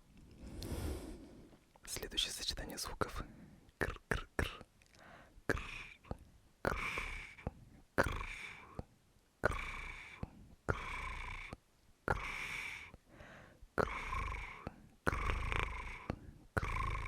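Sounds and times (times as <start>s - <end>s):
breathy hissing exhale: 0.4s - 1.5s, 12.2s - 13.6s.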